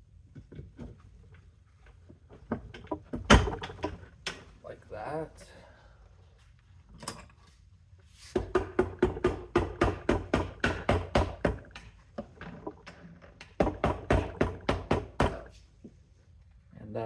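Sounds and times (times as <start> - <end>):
rapid knocking on metal: 8.4 - 11.8, 13.6 - 15.5.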